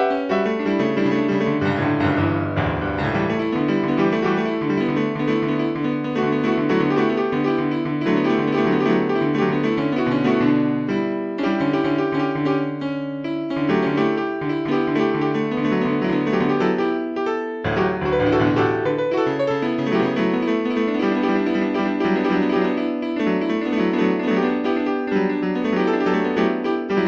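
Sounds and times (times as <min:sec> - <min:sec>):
solo piano chords: 0:00.0 - 0:27.0.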